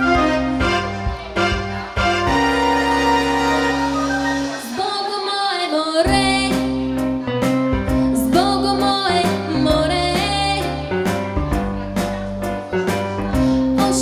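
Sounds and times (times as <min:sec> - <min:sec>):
instrumental accompaniment with bass: 0:00.0 - 0:04.9, 0:06.1 - 0:14.0
girl singing: 0:04.6 - 0:06.9, 0:08.2 - 0:10.9, 0:13.4 - 0:14.0.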